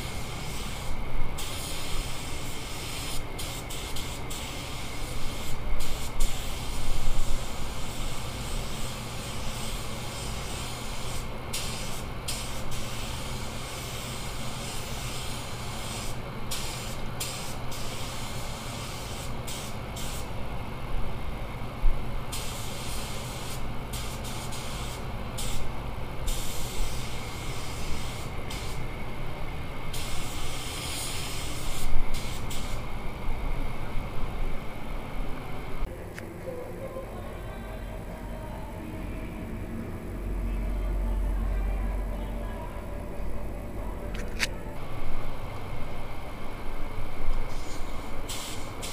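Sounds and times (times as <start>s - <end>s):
paint spray gun hissing: 0.0s - 20.3s, 22.3s - 25.7s, 26.3s - 28.9s, 29.9s - 32.9s, 47.5s - 48.9s.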